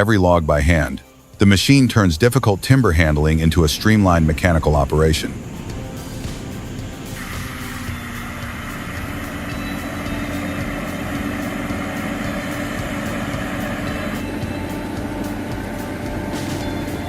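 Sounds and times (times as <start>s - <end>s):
machine engine droning: 3.7s - 17.0s.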